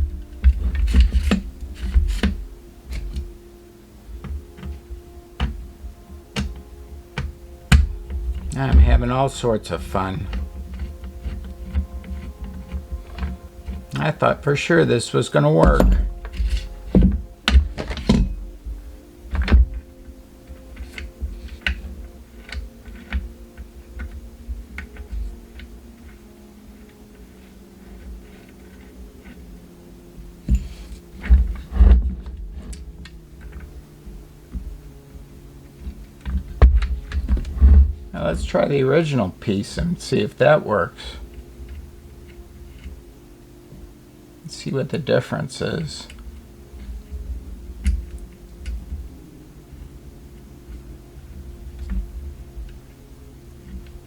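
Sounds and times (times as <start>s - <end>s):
metal latch parts clicking: 15.4s - 27.0s
metal tripod parts clicking: 15.6s - 18.5s.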